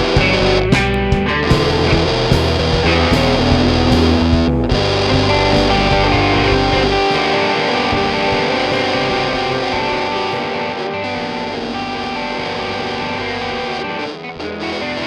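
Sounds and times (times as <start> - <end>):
bass guitar: 0.0 - 15.0
distorted electric guitar: 0.0 - 15.0
drums: 0.0 - 15.0.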